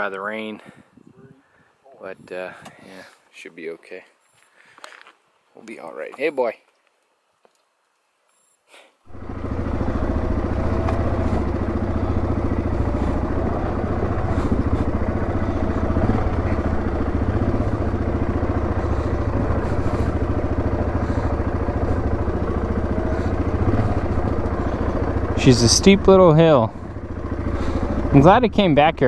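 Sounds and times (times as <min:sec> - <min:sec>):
atv engine climbing a hill: 0:09.0 - 0:29.0.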